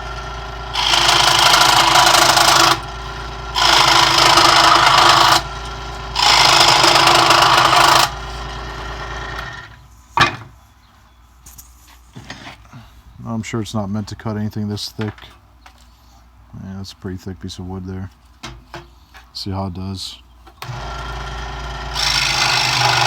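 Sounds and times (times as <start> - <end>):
scroll saw cutting wood: 0.0 - 9.8, 20.6 - 23.0.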